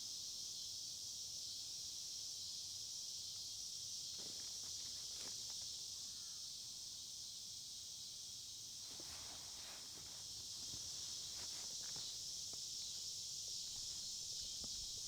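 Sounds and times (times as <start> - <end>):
insect chorus: 0.0 - 15.0
faint rustles: 8.8 - 12.2.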